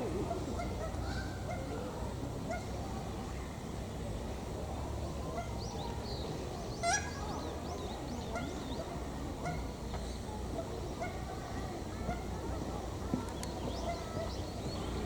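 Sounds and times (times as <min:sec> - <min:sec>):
birds calling: 0:05.1 - 0:15.0.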